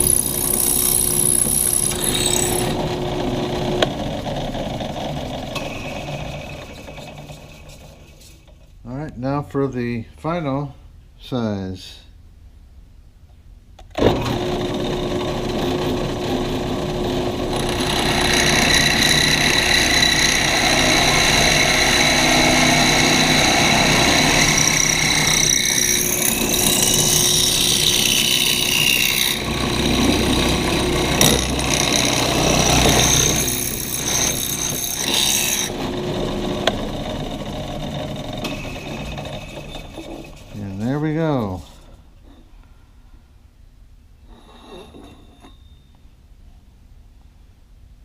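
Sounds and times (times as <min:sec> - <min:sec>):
drill bit cutting metal tube: 0:00.0 - 0:03.8, 0:14.4 - 0:36.7, 0:37.5 - 0:40.6
drill press motor hum: 0:00.0 - 0:07.8, 0:14.0 - 0:40.5.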